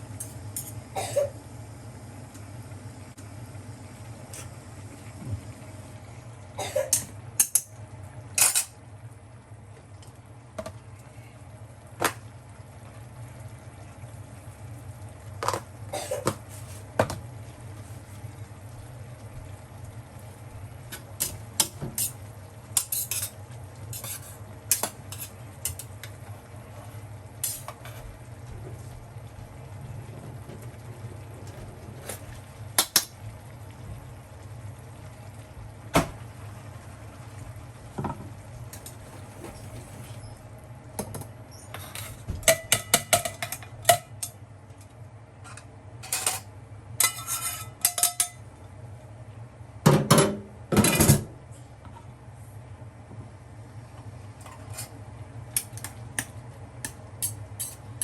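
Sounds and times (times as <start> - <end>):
steady low hum: 0.0 - 58.0
utensils clinking on metal cookware: 0.2 - 0.8, 8.4 - 8.8, 20.9 - 26.2, 27.4 - 28.0, 41.1 - 44.4, 45.4 - 48.4, 55.6 - 57.8.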